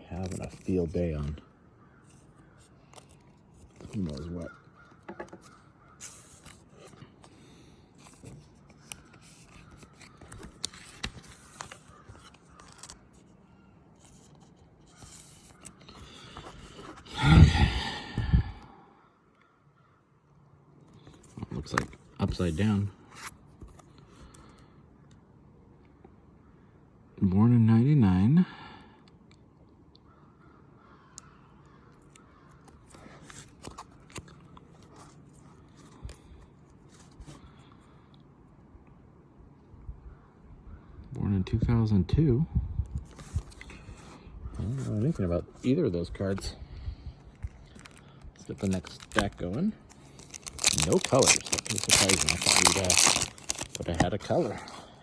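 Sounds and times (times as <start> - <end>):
card wrapper rustling: 5.4 - 7.0, 8.0 - 13.2, 32.7 - 37.4, 47.3 - 54.8
wrapper crinkling: 47.4 - 54.8.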